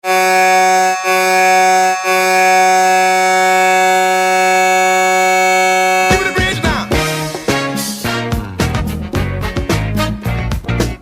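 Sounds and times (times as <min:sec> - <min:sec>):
hockey goal horn blasts: 0:00.0 - 0:08.3.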